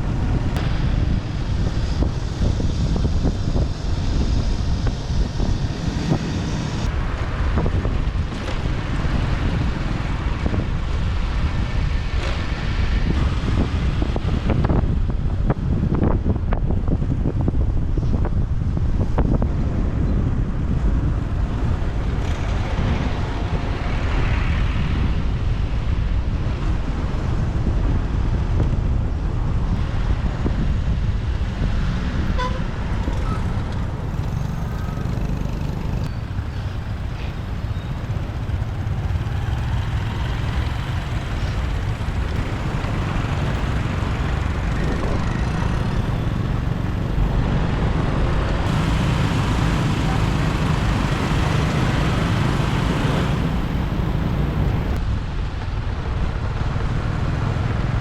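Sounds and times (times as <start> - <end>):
road traffic: 0.0 - 58.0
wind buffeting microphone: 0.0 - 58.0
motorbike engine rumble: 28.0 - 55.1.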